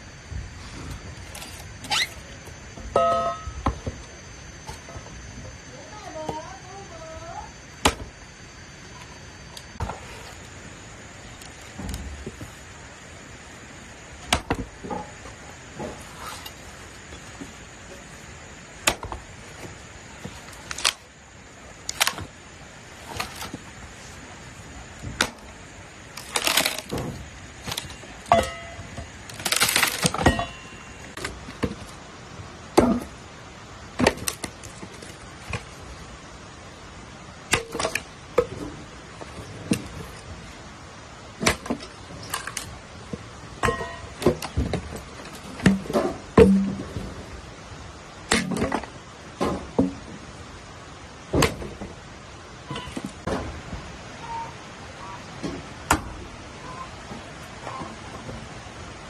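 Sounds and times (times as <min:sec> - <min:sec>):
dry sticks snapping: 0:26.1 - 0:27.0.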